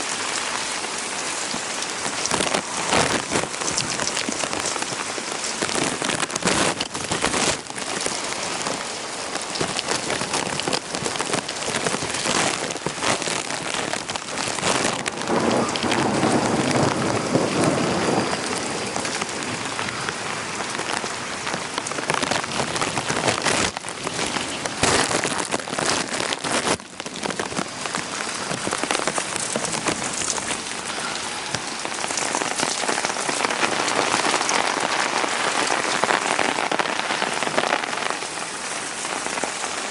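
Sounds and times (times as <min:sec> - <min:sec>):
heavy rain falling: 0:00.0 - 0:39.9
low thunder rumble: 0:12.9 - 0:20.8.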